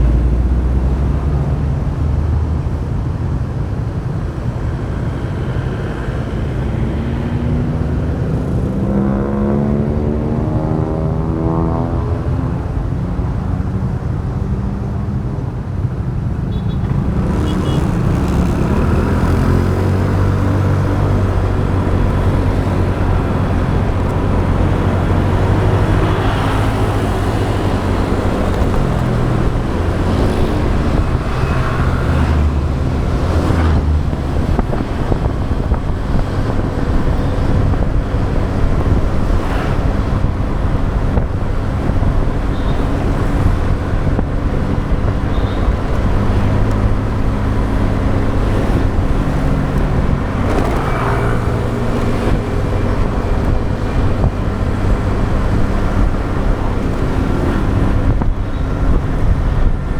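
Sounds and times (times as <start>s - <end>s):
passing traffic: 0.0s - 59.9s
road and wind noise: 0.0s - 59.9s.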